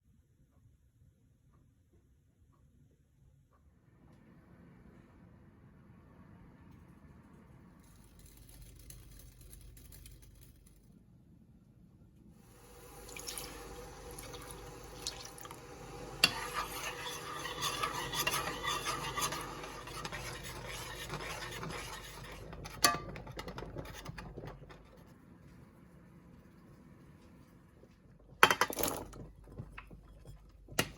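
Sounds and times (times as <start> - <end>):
utensil scraping in a pot: 12.5 - 25.2.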